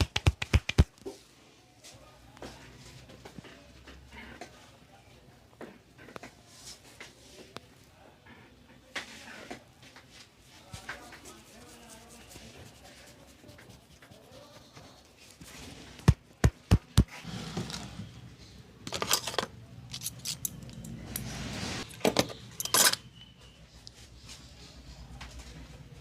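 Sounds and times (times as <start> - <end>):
hands slapping a head: 0.0 - 1.2, 16.0 - 17.1
patting and slapping: 0.0 - 1.2, 16.0 - 17.2.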